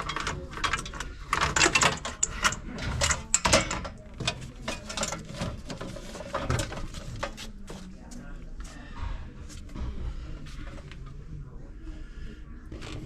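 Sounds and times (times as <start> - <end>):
clicking and clattering on metal: 0.0 - 7.8.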